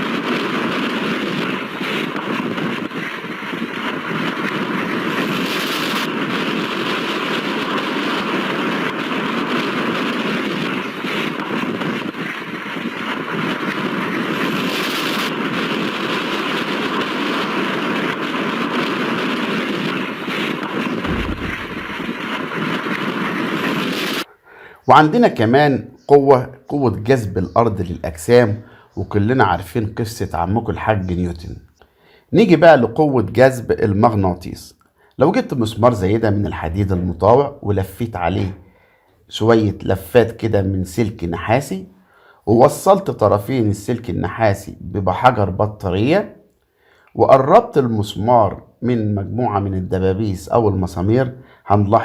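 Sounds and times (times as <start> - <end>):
strong wind blowing: 0.0 - 24.3.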